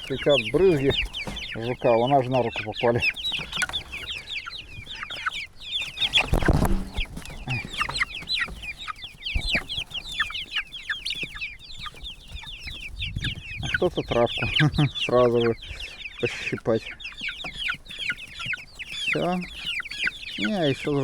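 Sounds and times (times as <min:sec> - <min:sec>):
chicks peeping and clucking: 0:00.0 - 0:21.0
rustling knock: 0:06.0 - 0:10.0.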